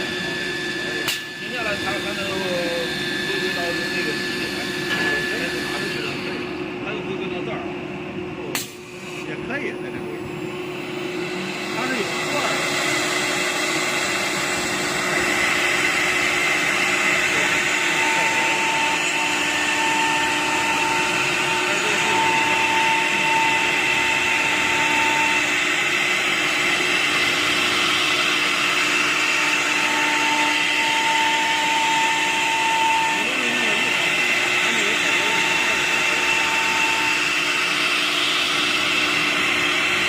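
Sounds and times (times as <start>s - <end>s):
pulsing machine tone: 0.0s - 7.4s, 9.0s - 28.8s
cnc router machine whine: 0.0s - 40.0s.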